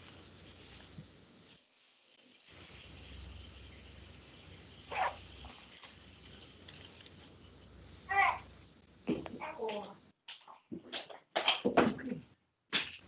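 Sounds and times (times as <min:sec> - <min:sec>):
faint high hiss: 0:00.0 - 0:09.0.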